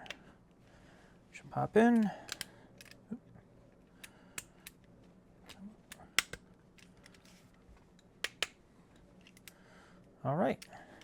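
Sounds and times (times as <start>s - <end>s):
metallic clicks of revolver parts: 1.9s - 3.1s, 4.0s - 7.4s, 8.0s - 8.6s, 9.2s - 9.6s, 10.5s - 11.0s.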